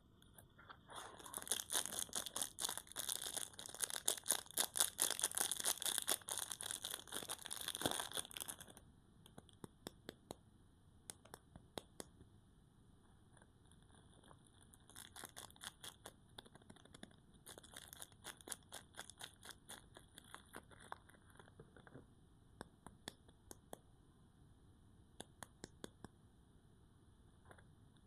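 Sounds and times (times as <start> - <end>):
wrapper crinkling: 1.1 - 8.8, 14.8 - 16.1, 16.8 - 21.2.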